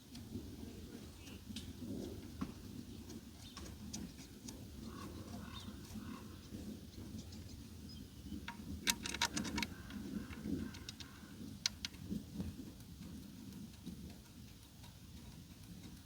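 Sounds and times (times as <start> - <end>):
hand tools clicking and tapping: 8.4 - 16.0.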